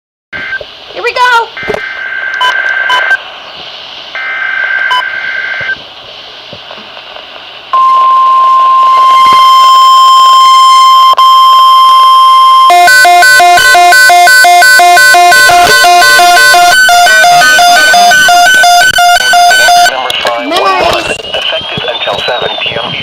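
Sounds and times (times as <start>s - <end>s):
piercing warning alarm tone: 0.4s - 3.2s, 4.1s - 5.8s, 7.7s - 20.0s
rasping digital data tones: 1.6s - 3.2s, 7.8s - 23.0s.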